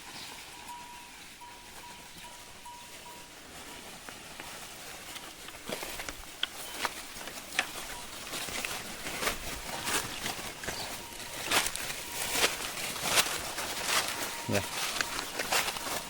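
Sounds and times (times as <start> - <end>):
footsteps through dry scrub: 0.0 - 16.0
twigs snapping: 5.1 - 15.9.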